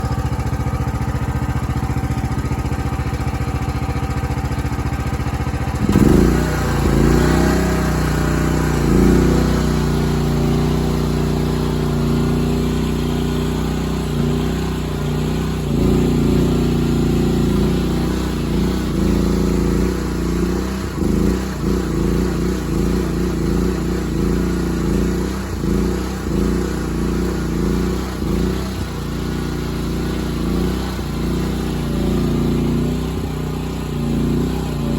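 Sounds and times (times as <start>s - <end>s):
petrol engine running: 0.0s - 34.9s.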